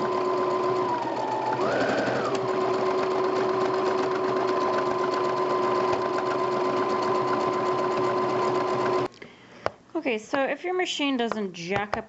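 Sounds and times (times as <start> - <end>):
sewing machine stitching: 0.0 - 9.1.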